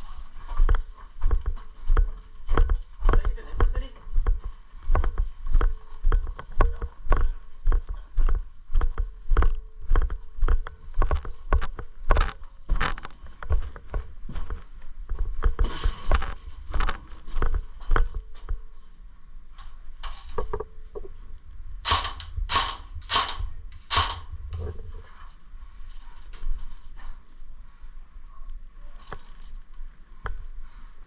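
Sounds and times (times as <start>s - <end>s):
footsteps on rough ground: 0.0s - 19.8s.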